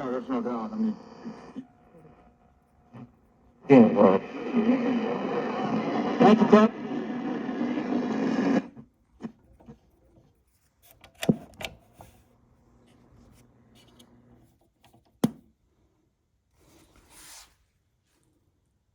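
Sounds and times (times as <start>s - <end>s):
talk on car radio: 0.0s - 1.6s, 3.7s - 8.2s
soft rustle: 16.6s - 18.5s.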